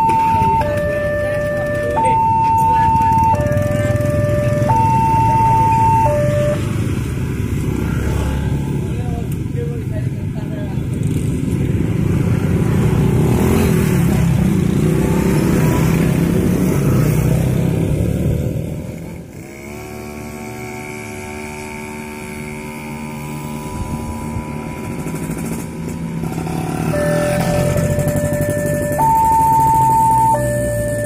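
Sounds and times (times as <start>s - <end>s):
electronic warning siren tone: 0.0s - 6.8s, 23.5s - 24.7s, 26.7s - 31.0s
humming engine: 0.0s - 31.0s
motorcycles passing: 0.0s - 31.0s.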